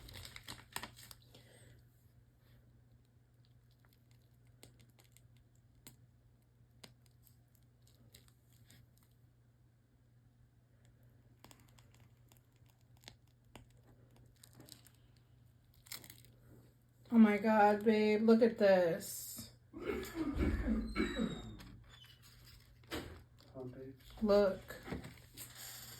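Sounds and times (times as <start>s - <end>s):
faint clicks and crinkles: 0.0s - 1.8s, 2.6s - 9.3s, 10.8s - 16.7s.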